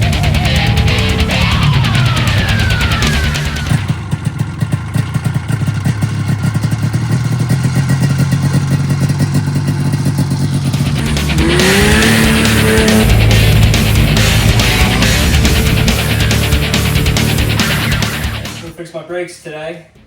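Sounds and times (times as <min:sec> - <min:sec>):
heavy rock music: 0:00.0 - 0:03.9, 0:10.7 - 0:18.9
buggy engine running: 0:00.0 - 0:20.0.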